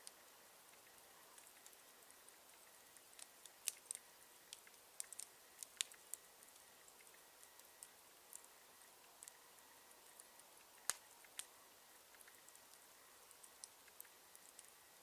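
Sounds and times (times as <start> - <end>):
campfire crackling: 0.0 - 15.0.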